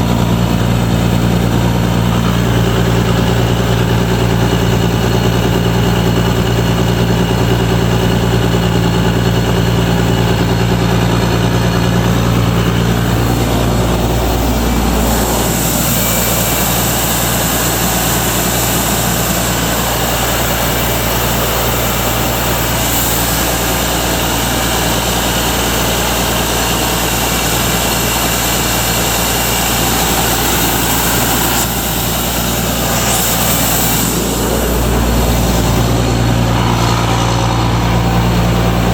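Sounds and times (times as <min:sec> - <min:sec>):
air compressor engine running: 0:00.0 - 0:38.9
broad hiss: 0:29.2 - 0:37.1.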